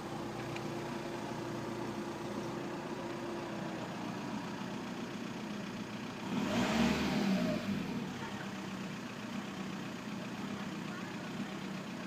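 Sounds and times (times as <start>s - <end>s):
diesel engine idling and revving: 0.0s - 12.0s.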